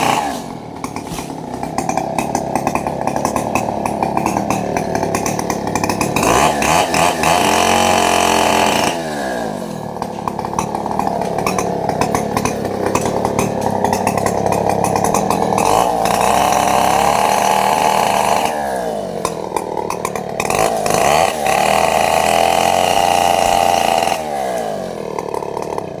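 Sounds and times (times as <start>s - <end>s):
chainsaw running at high revs: 0.0s - 26.0s.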